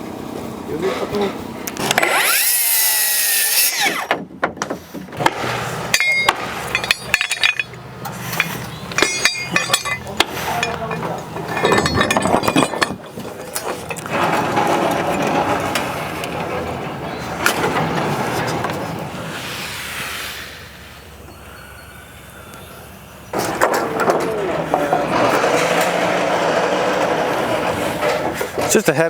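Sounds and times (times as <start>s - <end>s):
steady mechanical noise: 0.0s - 29.0s
power tool whining: 1.8s - 4.2s, 23.4s - 28.7s
metallic clinks: 5.9s - 14.0s.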